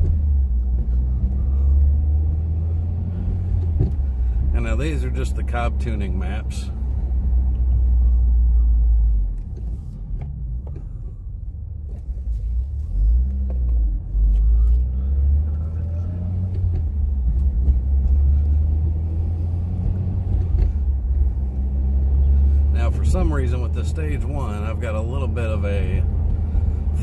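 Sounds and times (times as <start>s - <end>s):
car engine deep rumble: 0.0s - 27.0s.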